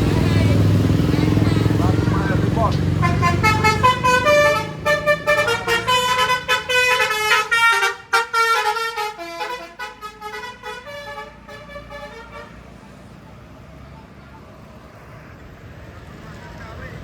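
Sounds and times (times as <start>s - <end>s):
bus horn playing a melody: 2.9s - 12.9s.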